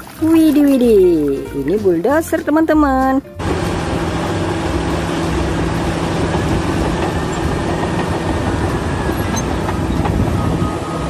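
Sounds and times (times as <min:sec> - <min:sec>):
machine humming: 0:03.4 - 0:11.0.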